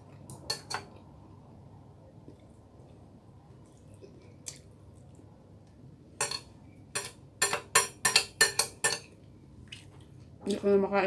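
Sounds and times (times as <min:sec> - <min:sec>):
cutlery clinking on plate: 0:06.2 - 0:09.1.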